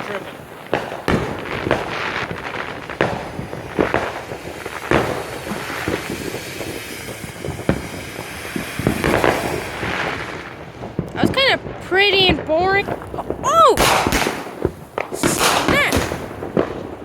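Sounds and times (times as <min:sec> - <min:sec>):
firework hissing crackle: 0:00.0 - 0:17.0
firework sharp pops: 0:00.0 - 0:17.0.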